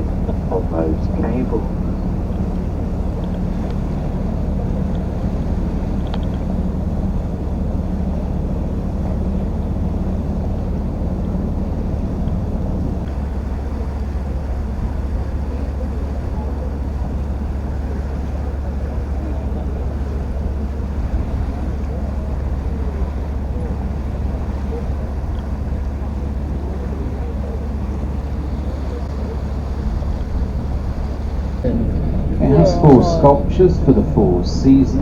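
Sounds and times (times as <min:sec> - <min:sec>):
higher hum: 0:00.0 - 0:14.3, 0:28.7 - 0:35.0
boat engine running: 0:00.0 - 0:35.0
water noise: 0:00.0 - 0:35.0
wind: 0:00.0 - 0:35.0.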